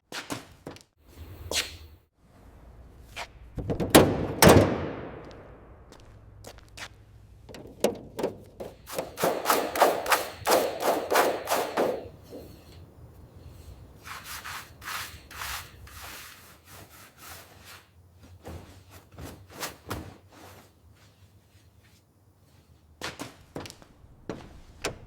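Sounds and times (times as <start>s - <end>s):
scrubbing strokes on a surface: 8.8s - 22.7s.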